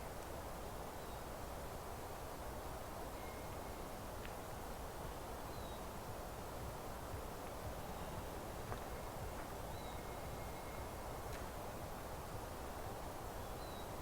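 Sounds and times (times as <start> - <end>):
forest meadow ambience: 0.0 - 14.0.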